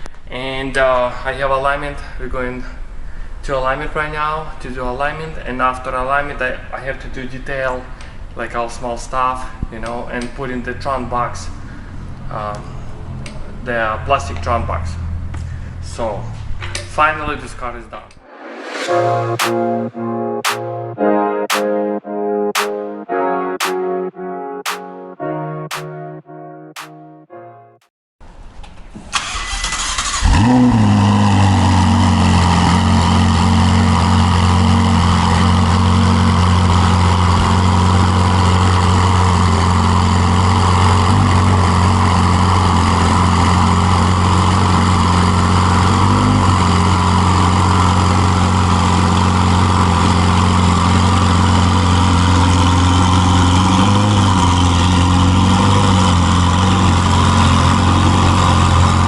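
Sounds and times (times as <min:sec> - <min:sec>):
car engine revving and idling: 0:30.2 - 0:59.0.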